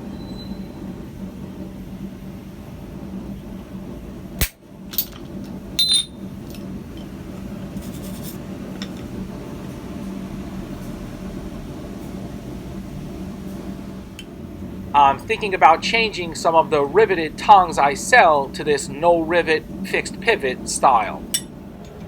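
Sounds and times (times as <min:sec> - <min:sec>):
forge blower humming: 0:00.0 - 0:22.0
metal-on-metal clanks: 0:04.4 - 0:07.1.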